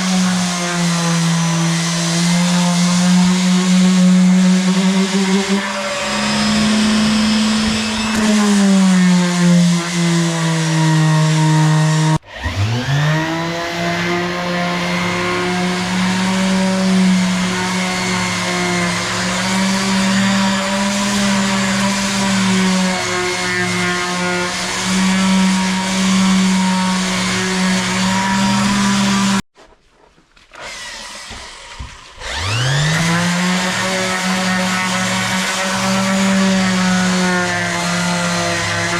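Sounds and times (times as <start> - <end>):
power tool motor running: 2.9 - 8.6, 30.6 - 35.0.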